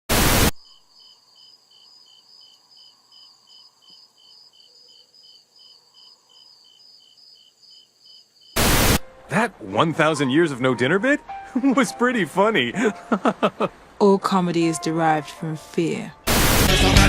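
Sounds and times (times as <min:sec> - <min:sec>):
loud burst of noise: 0:00.1 - 0:00.6, 0:08.6 - 0:09.0, 0:16.3 - 0:17.0
crickets chirping: 0:00.5 - 0:09.0.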